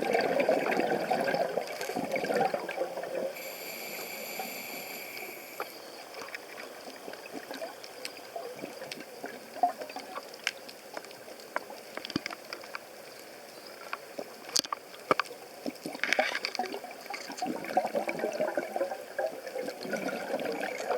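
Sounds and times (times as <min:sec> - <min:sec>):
bubbling: 0:00.0 - 0:11.1, 0:15.7 - 0:20.9
steady underwater hiss: 0:00.0 - 0:20.9
underwater clicks and crackles: 0:00.0 - 0:20.9.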